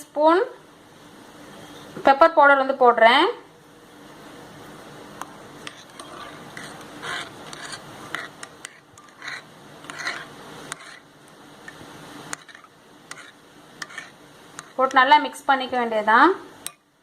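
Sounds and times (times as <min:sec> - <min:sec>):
spoon scraping a container: 0:05.6 - 0:11.1, 0:11.7 - 0:15.0.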